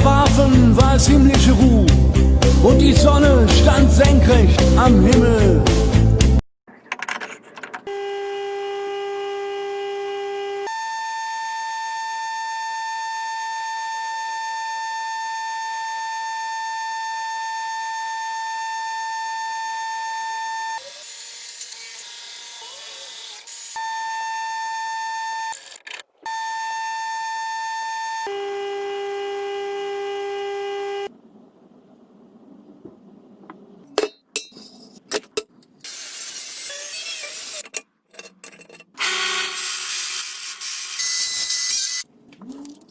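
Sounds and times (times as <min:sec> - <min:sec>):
buzzing electronic tone: 0:17.1 - 0:31.1, 0:39.4 - 0:42.0.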